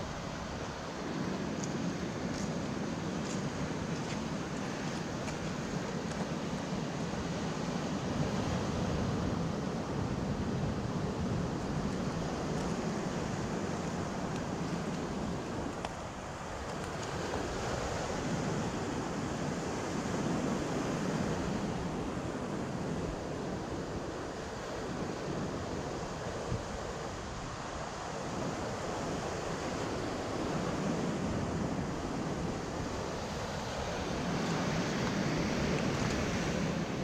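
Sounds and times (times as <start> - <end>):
ocean surf on rocks: 0.0 - 37.0
wind on microphone: 0.0 - 37.0.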